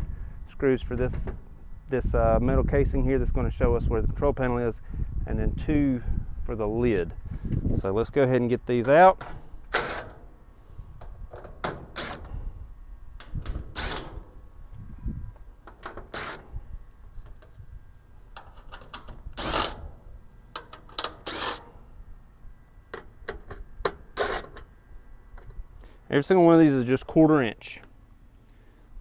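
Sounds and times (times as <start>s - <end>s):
low handling rumble: 0.0s - 9.7s
screwdriver scrapes and clicks: 9.2s - 10.2s, 11.4s - 12.4s, 13.2s - 14.4s, 15.6s - 16.6s, 18.3s - 21.8s, 23.0s - 24.7s.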